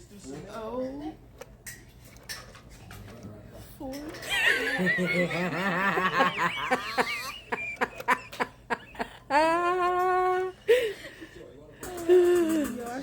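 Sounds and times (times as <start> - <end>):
person giggling and laughing: 4.3 - 11.0.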